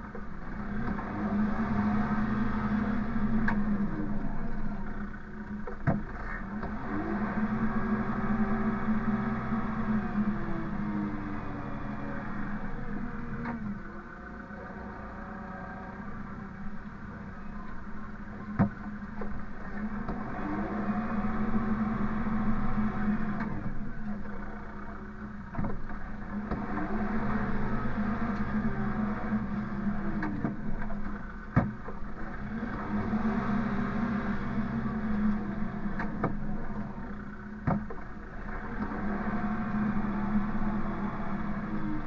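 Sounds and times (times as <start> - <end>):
engine running: 0.0 - 42.0.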